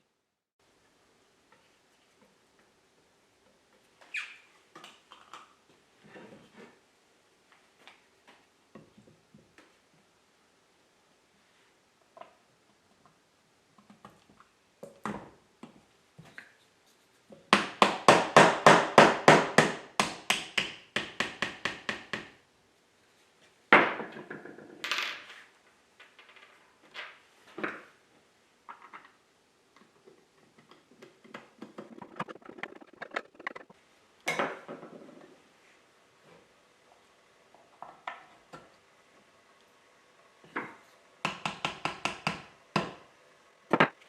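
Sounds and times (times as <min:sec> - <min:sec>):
hammering on wood: 0:17.5 - 0:22.4, 0:41.2 - 0:43.0.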